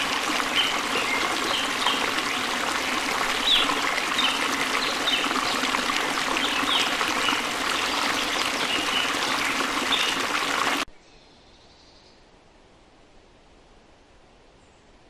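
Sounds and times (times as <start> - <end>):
stream water flowing: 0.0 - 10.9.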